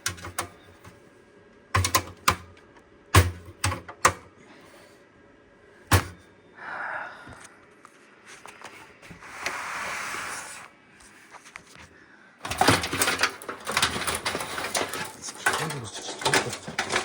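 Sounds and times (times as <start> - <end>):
pc case scraping: 9.1 - 10.7, 12.4 - 17.0
cables clicking and rattling: 12.4 - 17.0.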